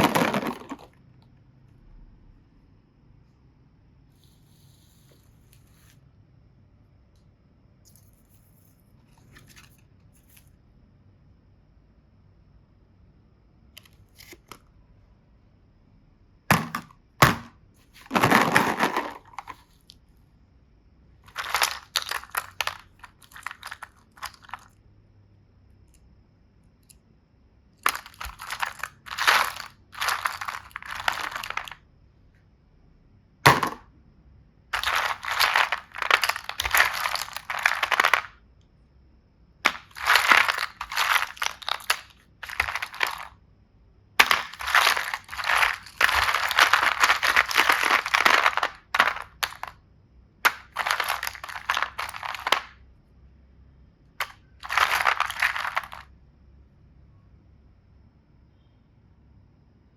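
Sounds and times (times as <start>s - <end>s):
crunching and crackling: 0.0s - 0.9s, 21.3s - 24.8s, 27.8s - 31.8s, 34.8s - 38.3s, 39.6s - 43.4s, 44.2s - 49.8s, 50.4s - 52.8s, 54.2s - 56.1s.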